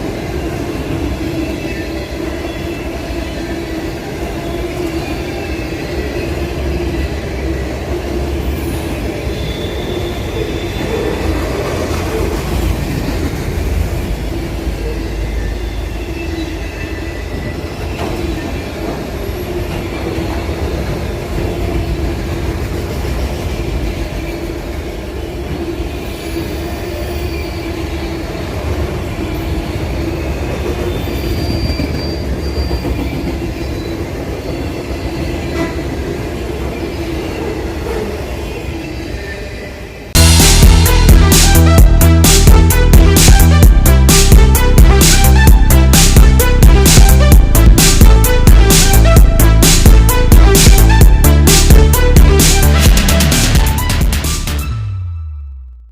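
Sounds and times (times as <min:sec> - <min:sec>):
train cars rumbling on rails: 0:00.0 - 0:54.8
train wheels squealing: 0:00.2 - 0:21.0, 0:23.2 - 0:40.1.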